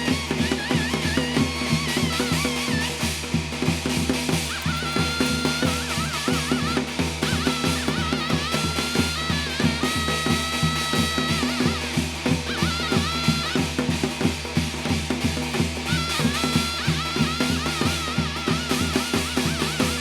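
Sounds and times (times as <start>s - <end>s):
fast steady drumbeat: 0.0s - 20.0s
wavering melody with vibrato: 4.4s - 13.9s, 15.8s - 20.0s.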